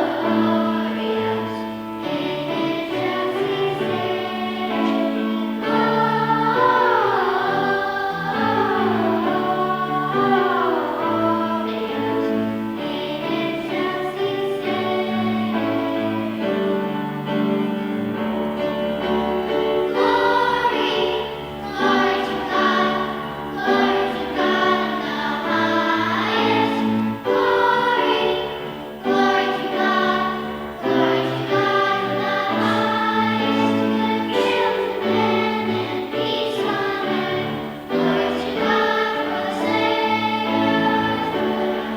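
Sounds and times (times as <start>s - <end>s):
church choir singing: 0.0s - 41.9s.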